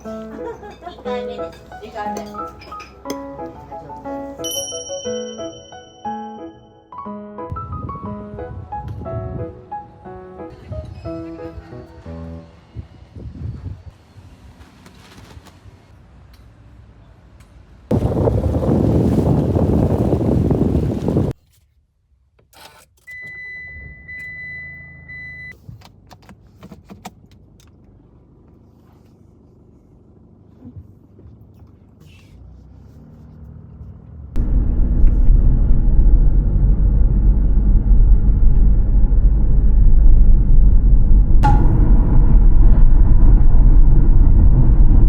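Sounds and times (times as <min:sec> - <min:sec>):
loud low vehicle rumble: 0:07.5 - 0:21.4, 0:27.2 - 0:45.0.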